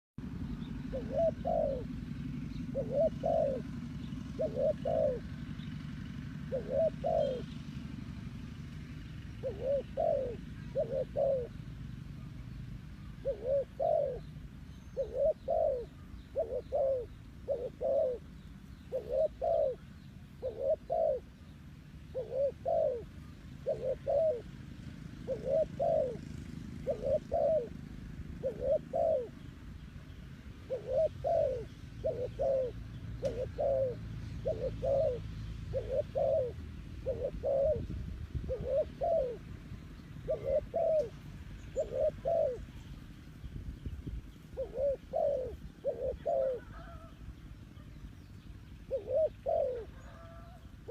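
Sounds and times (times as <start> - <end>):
low steady rumble: 0.2 - 50.9
dove cooing: 0.3 - 43.2, 44.2 - 50.9.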